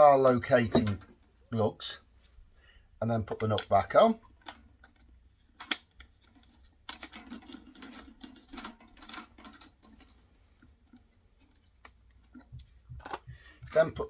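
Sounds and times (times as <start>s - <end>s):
plastic parts clicking and scraping: 3.1s - 14.0s.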